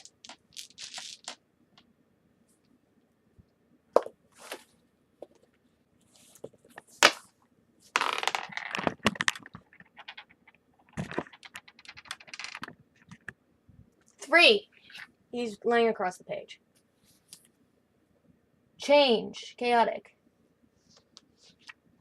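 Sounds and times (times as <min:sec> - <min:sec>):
die rolling on tabletop: 0:08.0 - 0:12.8.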